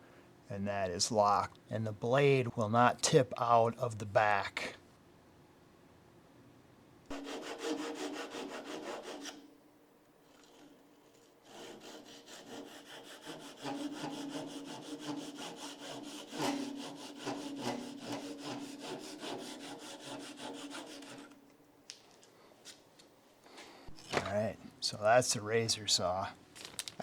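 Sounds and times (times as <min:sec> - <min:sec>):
hand saw rasping strokes: 0:07.1 - 0:09.4, 0:11.4 - 0:21.4.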